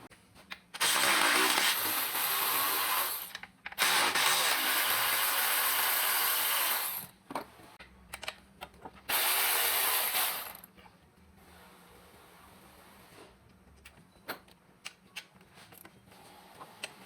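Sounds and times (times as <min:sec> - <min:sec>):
power tool running: 0:00.8 - 0:07.1, 0:09.1 - 0:10.6.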